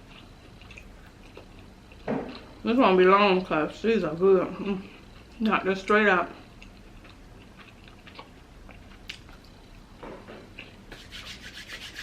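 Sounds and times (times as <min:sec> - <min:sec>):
soft chewing: 0:00.0 - 0:02.6, 0:04.5 - 0:11.2
rasping rubs: 0:10.9 - 0:12.0.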